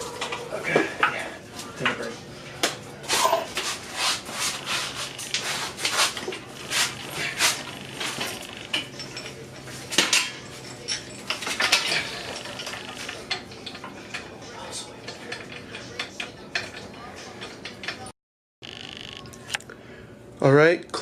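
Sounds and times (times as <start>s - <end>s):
metal tools and parts clanking: 7.2s - 18.1s.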